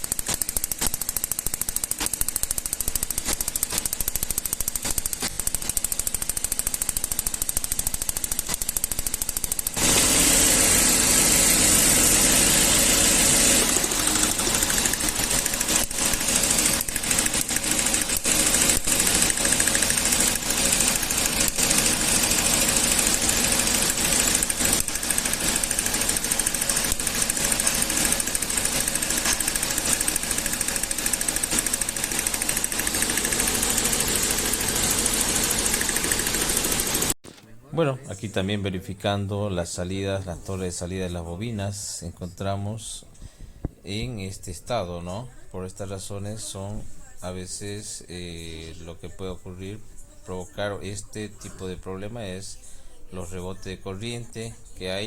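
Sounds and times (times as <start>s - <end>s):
rapid engine ticking: 0.0s - 37.2s
car engine running: 0.1s - 37.2s.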